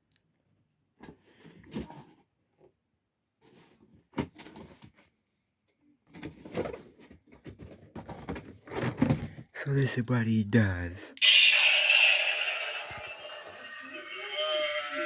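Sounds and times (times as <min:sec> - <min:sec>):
handling knocks and scrapes: 0:06.1 - 0:09.4.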